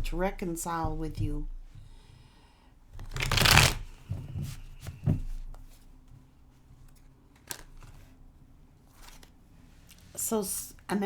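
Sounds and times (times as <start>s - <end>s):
cards being shuffled: 3.0s - 4.0s, 9.0s - 9.3s.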